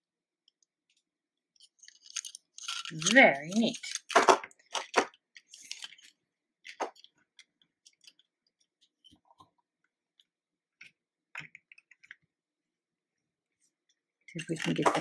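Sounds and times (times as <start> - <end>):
plastic toy clicks and knocks: 1.8 - 8.1, 14.3 - 15.0.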